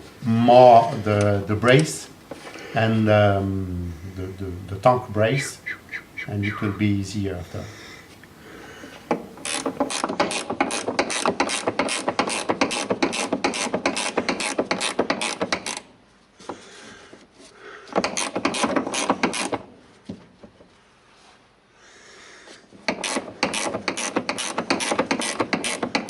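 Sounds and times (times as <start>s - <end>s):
socket ratchet clicking: 22.9s - 26.0s.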